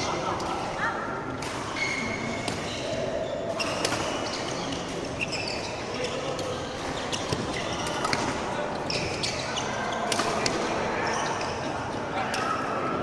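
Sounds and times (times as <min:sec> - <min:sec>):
reverberant hall background: 0:00.0 - 0:13.0
racket hitting shuttlecock: 0:01.4 - 0:03.0, 0:03.6 - 0:05.0, 0:10.1 - 0:10.7
shoes squeaking on court floor: 0:01.7 - 0:11.6.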